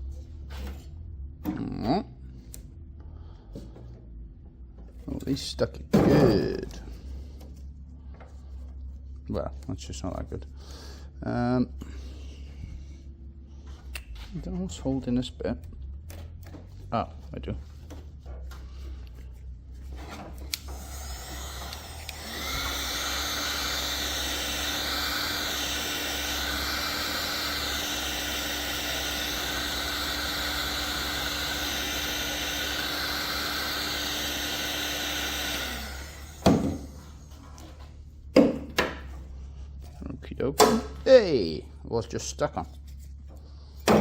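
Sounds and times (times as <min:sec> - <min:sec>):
high-speed power tool running: 0:20.5 - 0:37.3.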